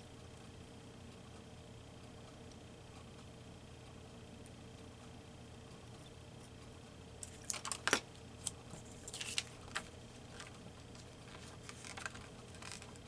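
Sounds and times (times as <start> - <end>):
paper rustling: 8.4 - 13.0.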